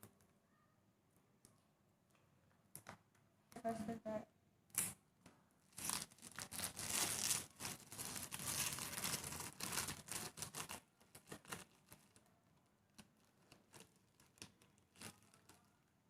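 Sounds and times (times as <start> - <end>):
packaging crinkling and rustling: 5.7 - 12.3, 12.9 - 15.8.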